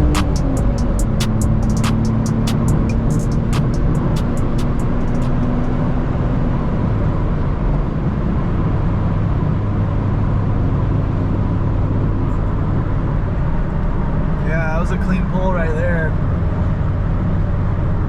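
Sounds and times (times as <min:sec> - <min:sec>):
car engine running: 0:00.0 - 0:07.5.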